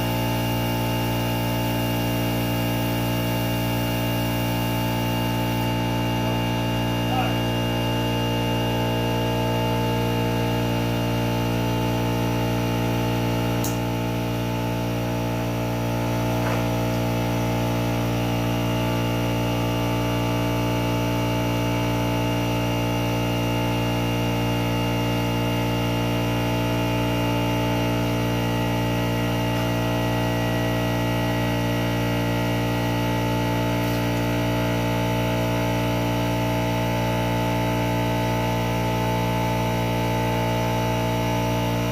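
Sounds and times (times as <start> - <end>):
machine hum: 0.0 - 41.9.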